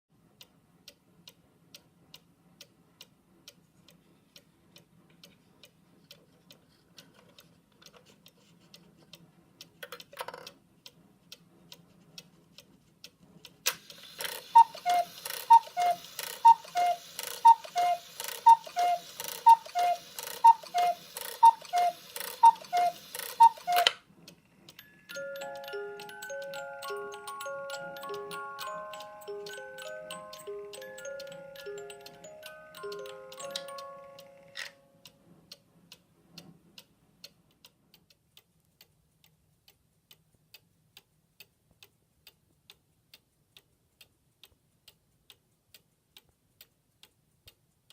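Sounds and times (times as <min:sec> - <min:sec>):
clock mechanism click: 0:00.4 - 0:24.9
cuckoo clock ticking: 0:00.4 - 0:47.9
music-box melody: 0:13.9 - 0:24.0, 0:24.6 - 0:35.3
two-note cuckoo call: 0:14.5 - 0:24.0.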